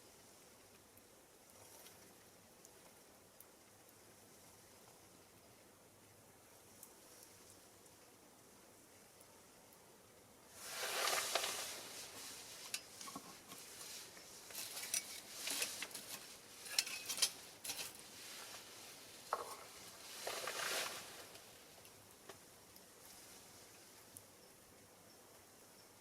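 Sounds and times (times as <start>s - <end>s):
fire crackling and popping: 10.5s - 24.3s
fire hissing: 10.5s - 24.3s.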